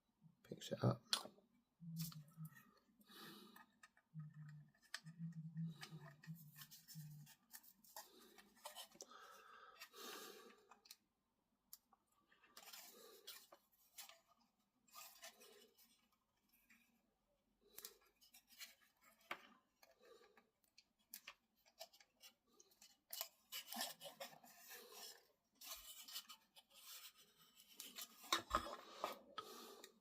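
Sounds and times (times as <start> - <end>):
plastic parts clicking and rustling: 17.7 - 30.0.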